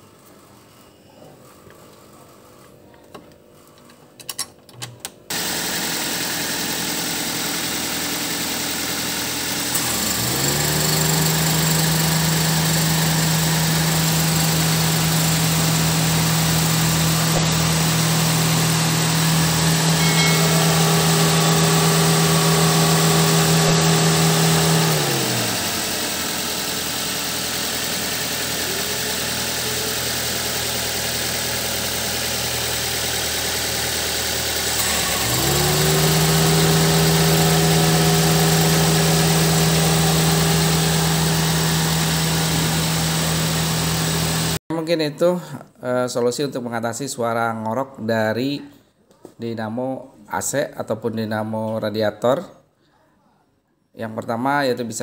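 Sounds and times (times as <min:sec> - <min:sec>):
car engine idling: 0:05.3 - 0:44.6
electric fan motor humming: 0:05.3 - 0:44.6.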